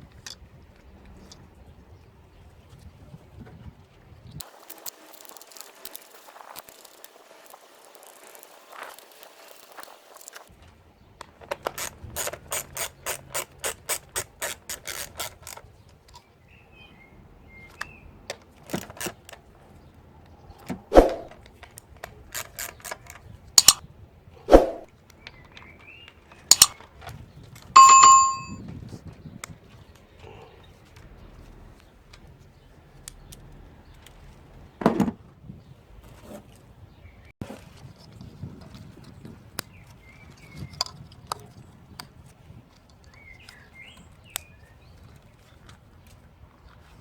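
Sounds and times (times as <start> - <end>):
sharp clicks: 23.6 - 23.8, 26.5 - 26.8
knocks and clicks: 27.8 - 28.6
metallic bell-like ding: 27.8 - 28.6.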